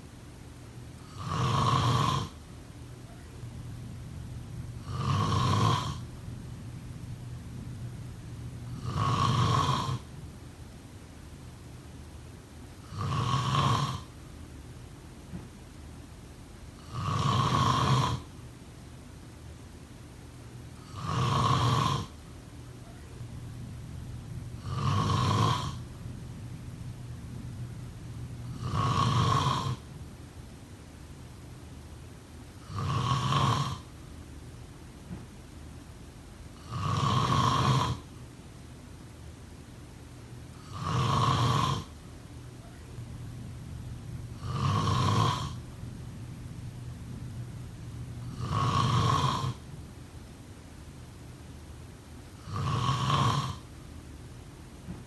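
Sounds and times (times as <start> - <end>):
steady low hum: 0.0 - 55.0
person snoring: 1.1 - 2.4, 4.4 - 6.1, 8.5 - 10.1, 12.8 - 14.1, 16.8 - 18.3, 20.8 - 22.2, 24.4 - 26.3, 27.1 - 29.9, 32.6 - 33.9, 36.6 - 38.1, 40.6 - 41.9, 42.9 - 49.7, 52.4 - 53.7.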